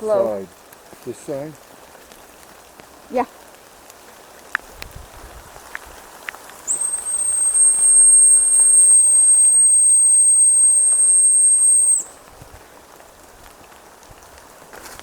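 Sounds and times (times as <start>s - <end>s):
dog whistle high-pitched blast: 6.7s - 12.1s.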